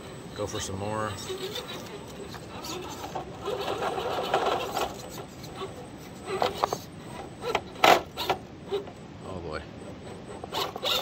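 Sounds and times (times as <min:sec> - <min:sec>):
rc car scraping over rock: 0:01.2 - 0:05.7.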